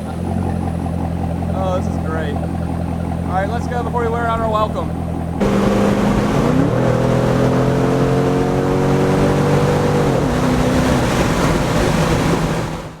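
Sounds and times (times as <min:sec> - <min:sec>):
loud car engine exhaust: 0:00.0 - 0:13.0.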